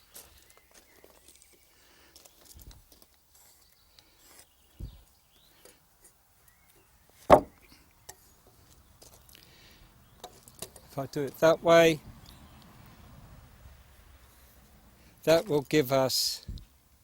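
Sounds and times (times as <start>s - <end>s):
dull thud: 4.8s - 5.0s, 7.3s - 7.6s
sharp wooden knock: 7.3s - 7.6s
hand tools clicking and scraping on wood: 10.2s - 11.5s.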